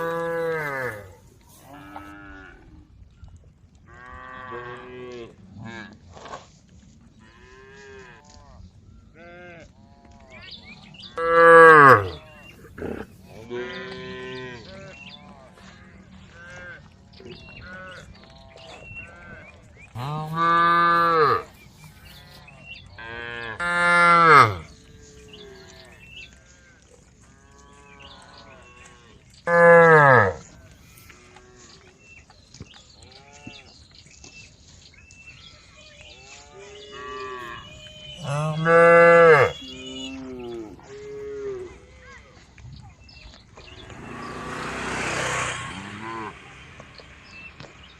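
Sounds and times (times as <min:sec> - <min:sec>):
cows mooing: 0:00.0 - 0:02.6, 0:11.1 - 0:26.1, 0:27.4 - 0:31.8, 0:36.4 - 0:41.8, 0:43.7 - 0:47.6.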